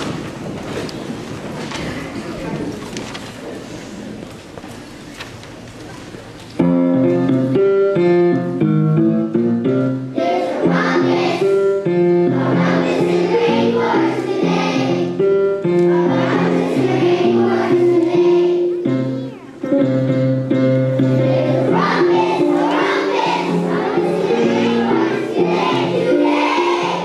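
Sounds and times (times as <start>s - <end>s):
instrumental accompaniment: 6.6s - 27.0s
children's choir singing: 10.1s - 19.1s, 20.8s - 27.0s.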